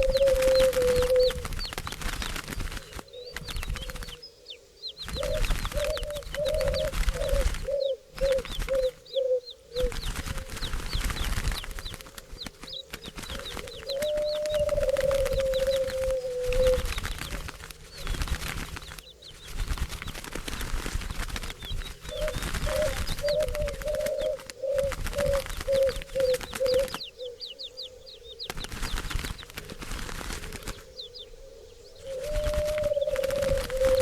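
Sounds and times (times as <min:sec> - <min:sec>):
small birds chirping: 0:00.0 - 0:34.0
low bird call: 0:02.8 - 0:11.1, 0:12.6 - 0:18.1, 0:21.6 - 0:28.6, 0:30.5 - 0:34.0
rustling haze: 0:05.2 - 0:27.0.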